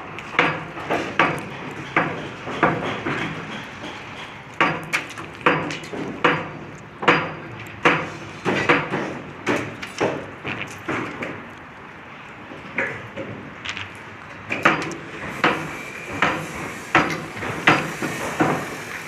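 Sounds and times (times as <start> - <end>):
hammer blows ringing: 4.6 - 9.1.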